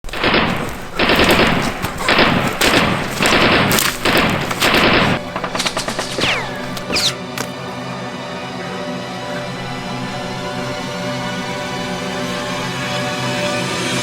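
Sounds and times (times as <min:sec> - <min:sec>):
automatic gunfire bursts: 0:00.1 - 0:07.7
music: 0:00.1 - 0:14.0.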